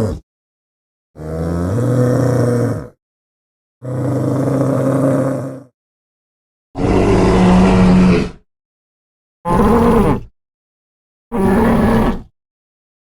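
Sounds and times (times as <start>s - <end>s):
dinosaur calls: 6.8s - 8.4s, 9.5s - 10.3s, 11.3s - 12.3s.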